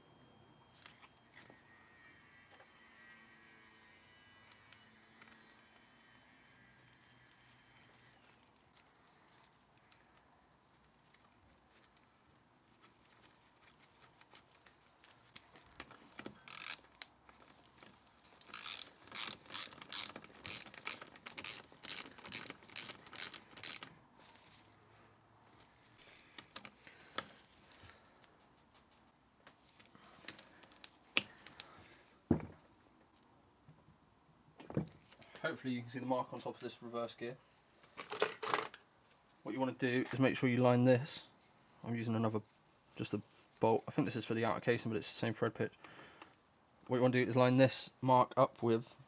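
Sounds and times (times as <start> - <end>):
metallic clicking of gearbox work: 16.3 - 17.0, 18.4 - 23.9.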